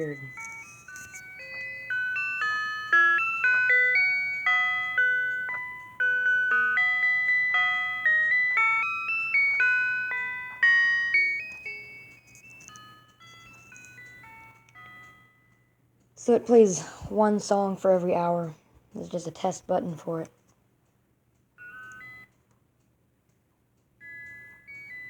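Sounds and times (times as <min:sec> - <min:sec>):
electronic chime melody: 0:00.0 - 0:15.4.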